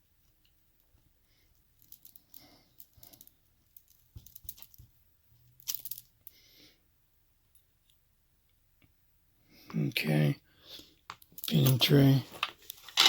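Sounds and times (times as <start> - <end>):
metal lock parts clicking and scraping: 11.2 - 13.0.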